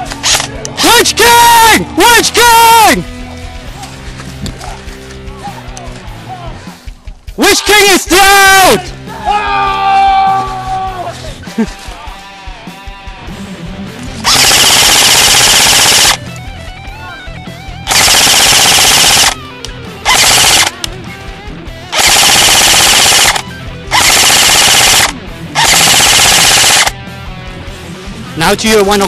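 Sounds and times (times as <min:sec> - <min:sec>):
metal background music: 0:00.0 - 0:29.0
airsoft rifle firing bursts: 0:14.2 - 0:16.2, 0:17.9 - 0:19.4, 0:20.0 - 0:20.9, 0:21.9 - 0:27.0.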